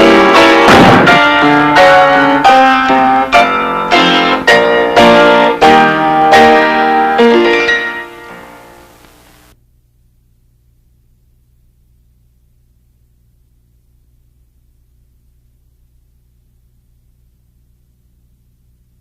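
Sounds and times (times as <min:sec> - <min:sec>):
piano-like chords: 0:00.0 - 0:09.0
faint low hum: 0:00.0 - 0:19.0.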